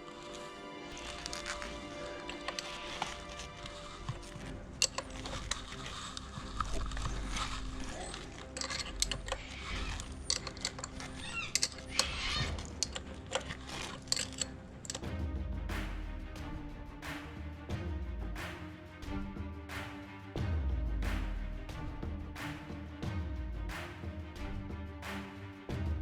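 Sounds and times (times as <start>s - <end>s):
hand tools clinking on metal: 1.0s - 6.3s, 7.7s - 15.0s.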